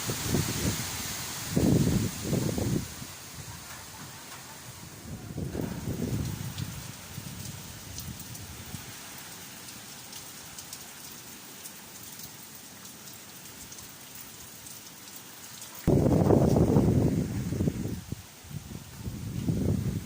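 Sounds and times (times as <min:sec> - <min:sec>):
wind gust buffeting microphone: 0:00.0 - 0:08.8, 0:15.9 - 0:20.0
heavy rain hissing: 0:00.0 - 0:20.0.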